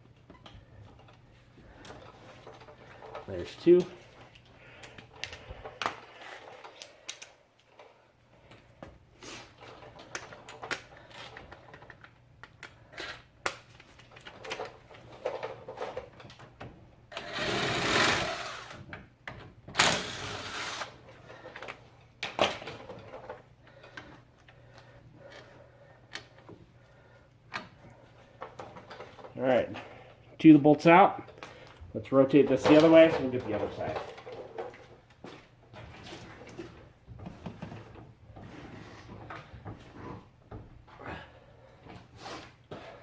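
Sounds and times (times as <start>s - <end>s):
tools and bolts clicking: 1.8s - 7.7s
impact wrench running: 17.1s - 18.8s, 19.8s - 21.0s.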